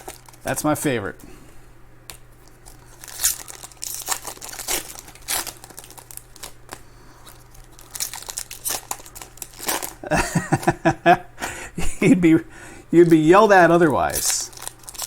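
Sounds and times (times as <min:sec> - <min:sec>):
card pack wrappers torn and crinkled: 0:00.0 - 0:00.6, 0:02.4 - 0:10.8, 0:13.0 - 0:15.0.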